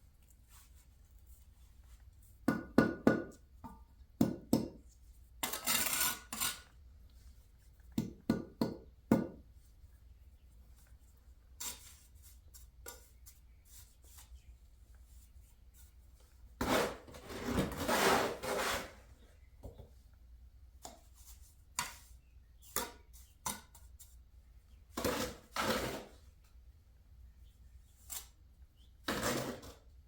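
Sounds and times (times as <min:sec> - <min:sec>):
trowel scraping mortar on brick: 0:05.4 - 0:06.8, 0:16.6 - 0:19.1, 0:24.9 - 0:26.2, 0:29.0 - 0:29.9.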